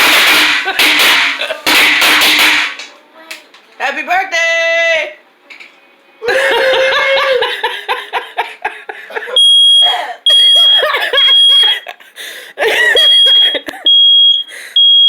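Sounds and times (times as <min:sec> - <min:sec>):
people laughing: 0:00.6 - 0:01.7, 0:06.2 - 0:14.0
smoke alarm beeping: 0:09.4 - 0:11.9, 0:12.9 - 0:15.0.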